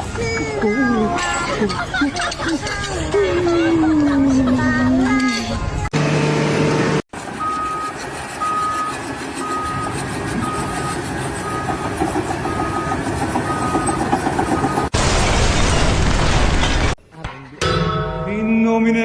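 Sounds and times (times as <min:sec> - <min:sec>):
loud steady rushing noise: 0:05.9 - 0:07.1
engine running: 0:05.9 - 0:14.2
vehicle backup alarm beeping: 0:06.0 - 0:11.8, 0:12.4 - 0:15.0.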